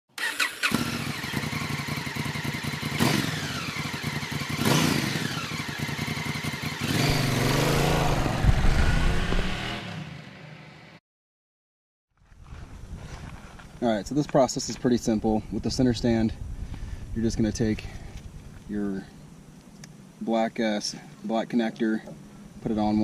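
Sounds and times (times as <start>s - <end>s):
motorcycle throttle blips: 0.2s - 10.0s
motorcycle engine idling: 0.8s - 9.4s.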